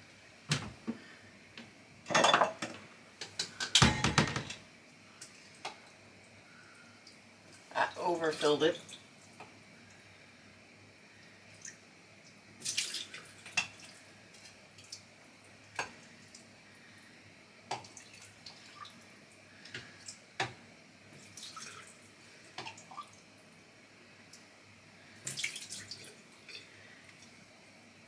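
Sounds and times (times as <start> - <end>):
water dripping and splashing: 11.6 - 16.5, 21.1 - 22.0, 25.2 - 26.6.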